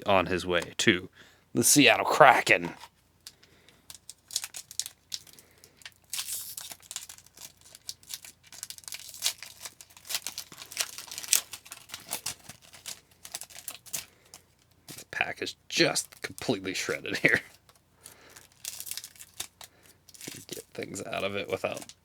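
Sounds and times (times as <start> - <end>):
wrapper tearing and crinkling: 3.8 - 15.1, 15.9 - 22.0.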